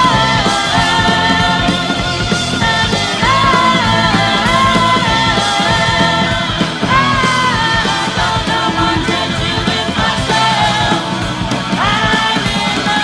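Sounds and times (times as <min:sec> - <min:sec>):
heavy metal band: 0:00.0 - 0:13.0.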